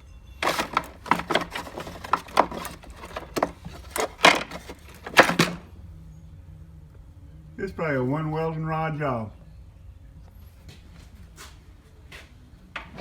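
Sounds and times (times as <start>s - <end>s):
objects clattering and rattling: 0.4s - 5.7s.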